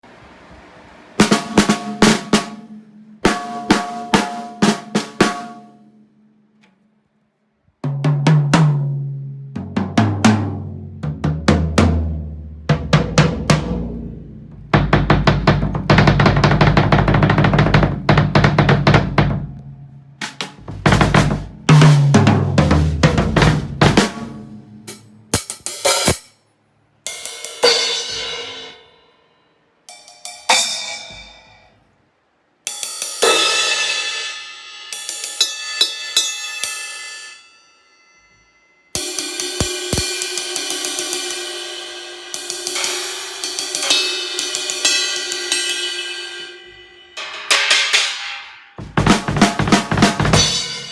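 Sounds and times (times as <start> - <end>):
rapid cymbal playing: 1.2 - 5.9, 20.2 - 26.4, 27.1 - 29.2, 29.9 - 31.7, 32.7 - 37.9, 38.9 - 50.9
sharp drum hits: 1.2 - 5.9, 9.6 - 26.3, 39.0 - 41.5, 42.4 - 50.9
cymbal strikes ringing: 1.2 - 6.0, 27.1 - 31.7, 32.7 - 50.9.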